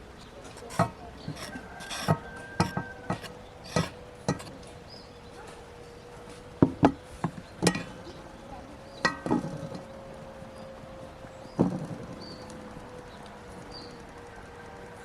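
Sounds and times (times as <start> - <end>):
sharp knocks and taps: 0.5 - 4.6, 6.6 - 7.9.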